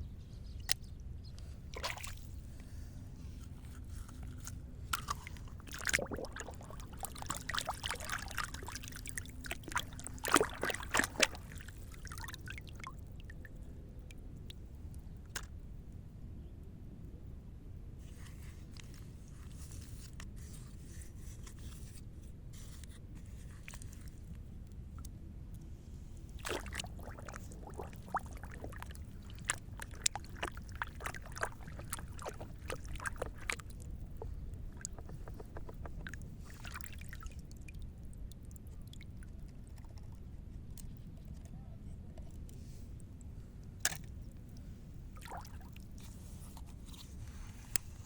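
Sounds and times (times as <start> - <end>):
water trickling and sloshing: 0.7 - 15.5, 22.6 - 41.5, 42.2 - 48.0
steady low rumble: 25.3 - 39.3.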